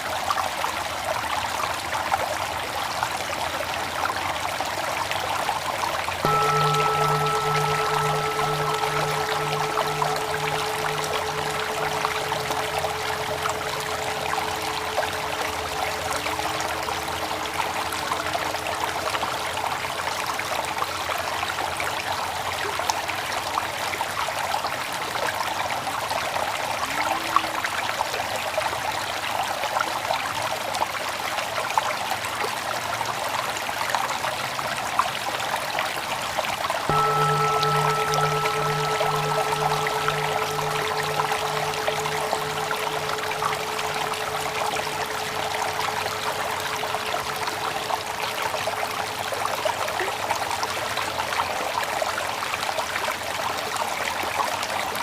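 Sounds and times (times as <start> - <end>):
background music held tones: 6.2 - 19.8, 36.9 - 49.4.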